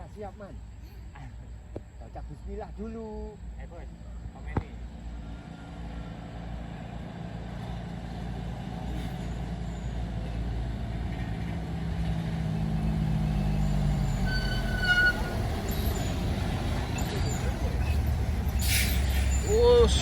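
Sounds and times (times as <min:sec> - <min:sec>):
truck diesel engine pulling hard: 0:05.2 - 0:20.0.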